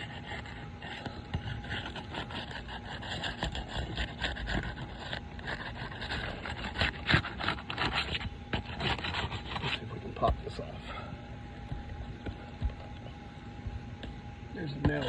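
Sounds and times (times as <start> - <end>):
tool scraping roof shingles: 0.0 - 10.4.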